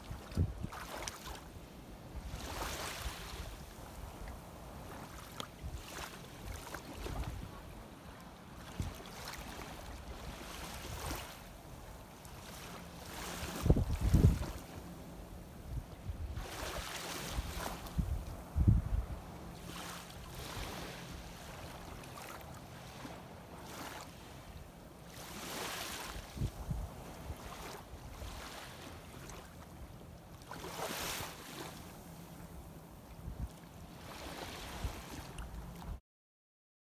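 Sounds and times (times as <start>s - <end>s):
wind gusts on microphone: 0.0s - 1.0s, 13.3s - 14.7s, 15.5s - 19.4s, 26.2s - 28.4s, 33.2s - 36.0s
small waves washing: 0.0s - 18.2s, 19.1s - 35.9s.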